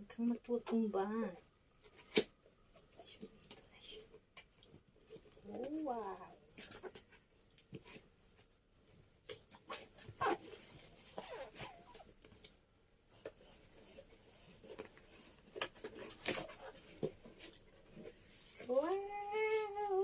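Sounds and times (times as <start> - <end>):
cardboard and plastic packaging rustling: 4.6 - 20.0.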